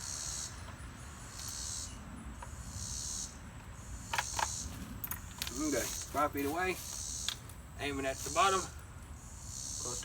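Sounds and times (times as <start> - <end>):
insects chirring: 0.0 - 10.0.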